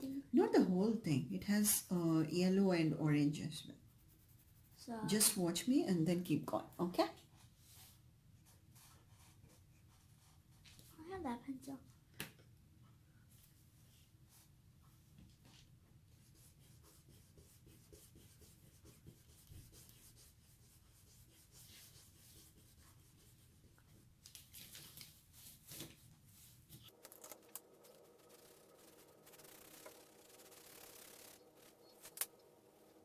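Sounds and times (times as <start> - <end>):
pencils scratching on paper: 16.1 - 24.0, 26.8 - 33.0.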